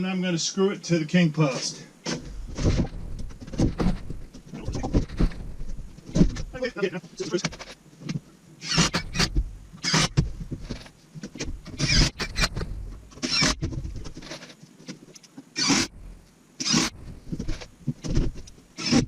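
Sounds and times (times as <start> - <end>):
knocks and rumbling: 2.1 - 8.2, 8.8 - 14.4, 15.8 - 19.0.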